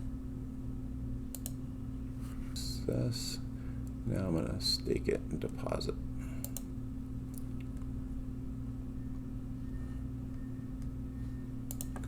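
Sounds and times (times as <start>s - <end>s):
low electrical hum: 0.0s - 12.0s
faint high whine: 8.6s - 11.9s.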